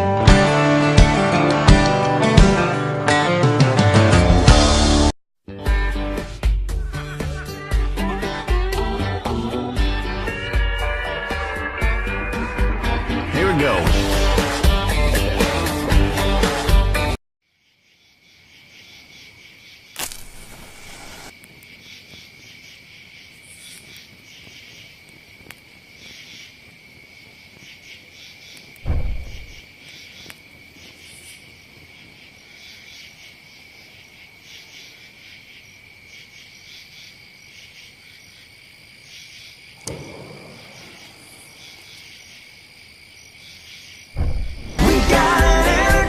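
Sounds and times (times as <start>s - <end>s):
insects droning: 17.5s - 45.9s
dull thumps: 28.8s - 29.6s, 44.2s - 44.9s.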